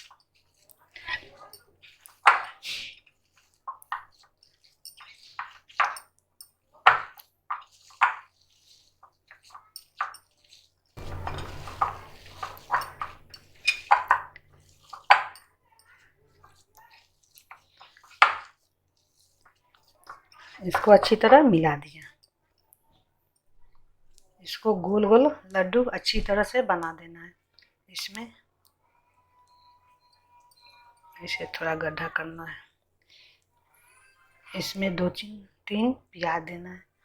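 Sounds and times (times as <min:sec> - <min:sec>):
hands kneading mixture squishes: 0:00.0 - 0:22.0
clinks against metal bowl: 0:04.8 - 0:07.2, 0:09.5 - 0:10.4, 0:11.0 - 0:17.0.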